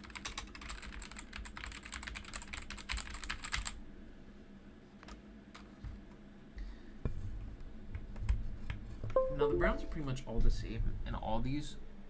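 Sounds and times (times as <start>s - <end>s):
mechanical keyboard typing: 0.0s - 3.8s.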